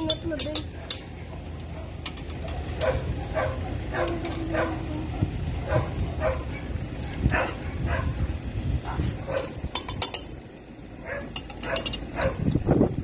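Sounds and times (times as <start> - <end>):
clinks: 0.0 - 3.0, 3.9 - 4.8, 9.7 - 10.4, 11.2 - 12.4
dog barking: 1.7 - 8.2, 8.9 - 9.6, 11.0 - 12.4.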